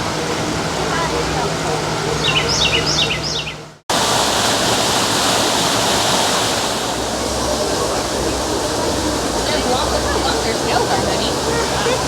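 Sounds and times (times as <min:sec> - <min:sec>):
bird chirping: 0:02.1 - 0:03.7
falling water rushing: 0:03.9 - 0:12.0.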